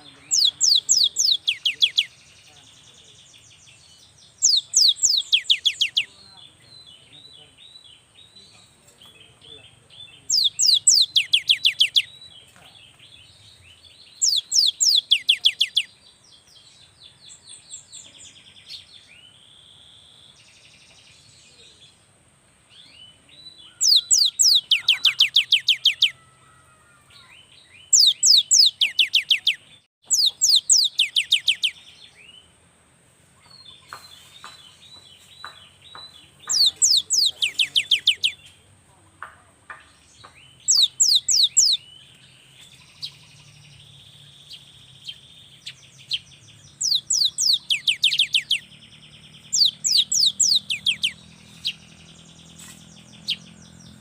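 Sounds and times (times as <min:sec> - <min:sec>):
bird chattering calls: 0:00.0 - 0:02.2, 0:04.4 - 0:06.2, 0:10.3 - 0:12.2, 0:14.2 - 0:15.9, 0:23.7 - 0:26.2, 0:27.9 - 0:31.8, 0:36.4 - 0:38.5, 0:40.6 - 0:41.8, 0:45.1 - 0:48.7, 0:49.3 - 0:51.9
bird singing high falling notes: 0:22.8 - 0:26.4, 0:40.5 - 0:54.0.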